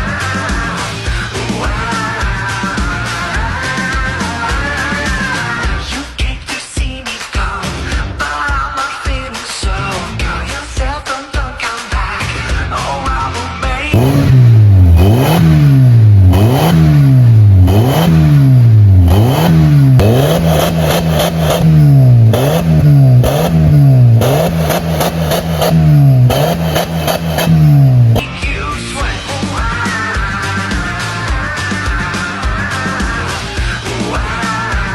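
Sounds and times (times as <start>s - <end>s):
car engine revving: 14.0s - 28.3s.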